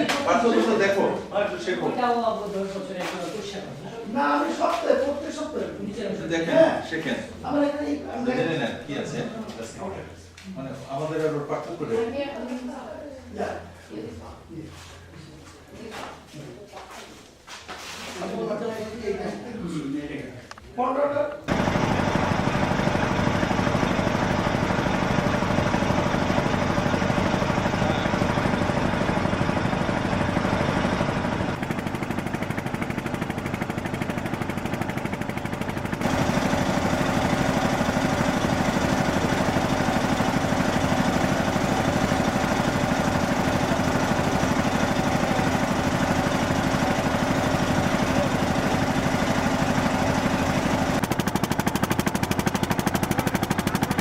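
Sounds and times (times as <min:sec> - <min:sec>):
engine running with rattle: 0:21.5 - 0:54.0.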